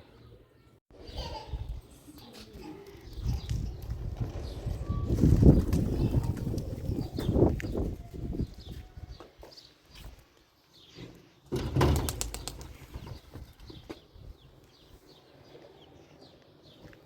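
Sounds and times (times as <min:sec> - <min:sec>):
pigeon wings flapping: 0:05.0 - 0:07.4, 0:11.6 - 0:13.2.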